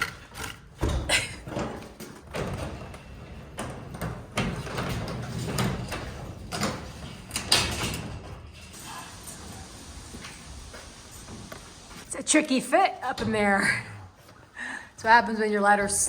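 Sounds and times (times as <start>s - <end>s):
metallic knocks and rattles: 0.0s - 9.8s.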